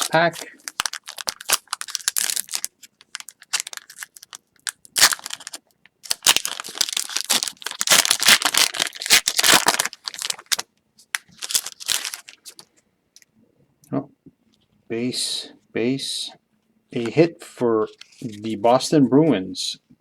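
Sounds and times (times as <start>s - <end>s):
wrapper crackling: 0.0s - 12.7s
wrapper crinkling by hand: 0.0s - 12.7s
wrapper ripping: 0.0s - 12.7s.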